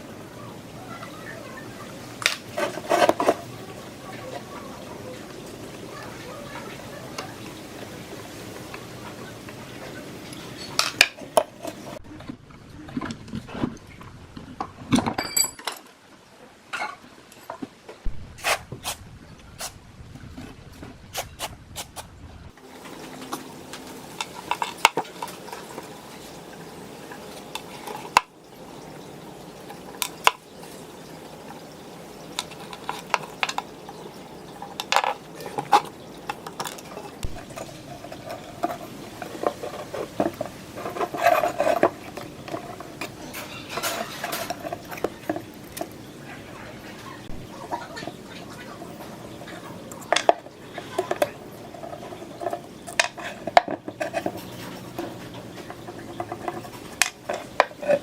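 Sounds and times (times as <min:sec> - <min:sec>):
background hiss: 0:13.0 - 0:58.0
metal parts clinking: 0:15.0 - 0:15.8.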